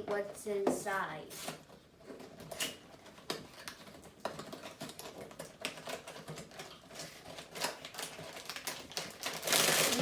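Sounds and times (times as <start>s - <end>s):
toy packaging being opened: 2.4s - 10.0s.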